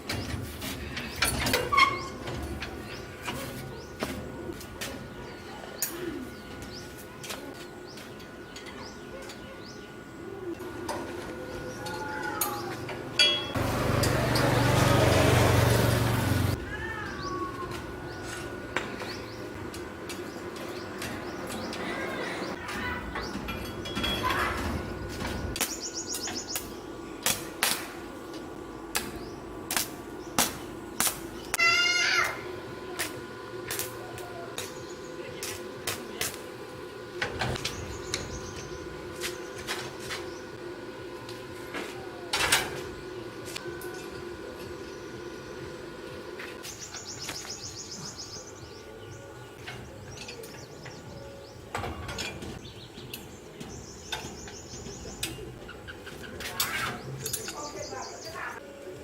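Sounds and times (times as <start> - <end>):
bird cooing: 21.6 - 23.2
high bird chirps: 25.6 - 26.8.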